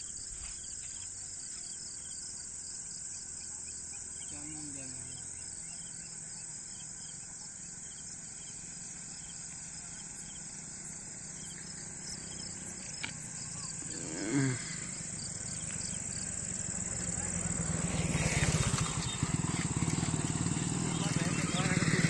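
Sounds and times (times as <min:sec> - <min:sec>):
crickets and insects chirring: 0:00.0 - 0:22.0
low animal call: 0:11.4 - 0:17.6.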